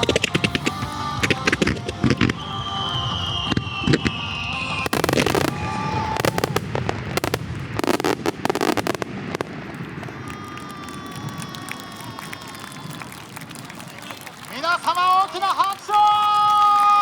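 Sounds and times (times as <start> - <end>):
song playing: 0.0 - 9.0
fireworks bursting and crackling: 0.0 - 17.0.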